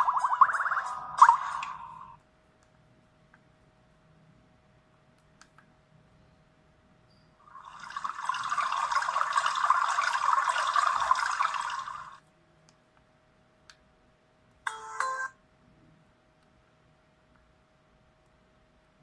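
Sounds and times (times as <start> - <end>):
water-like ringtone from small speaker: 0.0 - 2.0.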